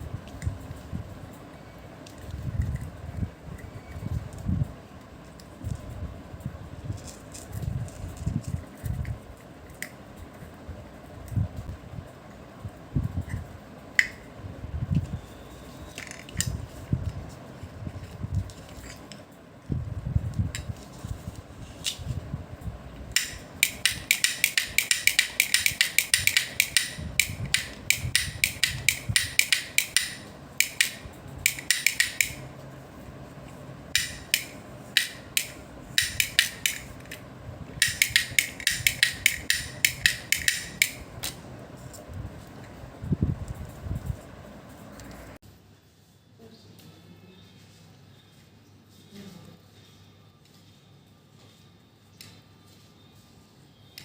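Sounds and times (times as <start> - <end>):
sticks tapping a toy drum: 23.2 - 32.5, 34.0 - 37.2, 37.8 - 41.4.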